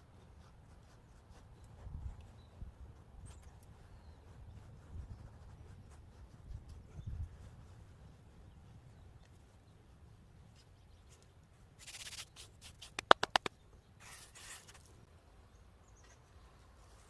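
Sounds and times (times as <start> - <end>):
sharp clicks: 12.8 - 13.6
scraping rustle: 14.0 - 15.0.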